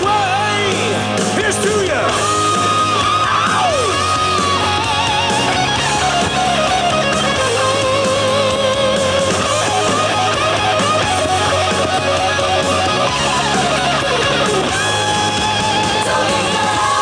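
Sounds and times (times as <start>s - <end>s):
electric guitar lead bending: 0.0s - 17.0s
instrumental rock music: 0.0s - 17.0s.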